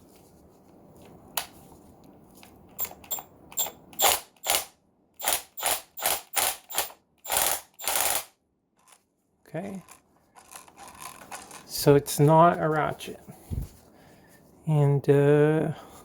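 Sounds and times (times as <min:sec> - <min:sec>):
impact wrench whirring bursts: 0:02.8 - 0:08.3.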